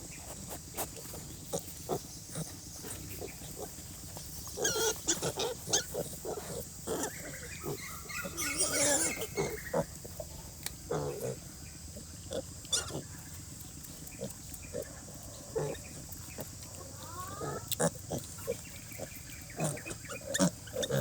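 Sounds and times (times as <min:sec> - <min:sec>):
pigs grunting: 0:00.0 - 0:21.0
piglets squealing: 0:04.6 - 0:09.9, 0:12.3 - 0:13.0, 0:16.8 - 0:21.0.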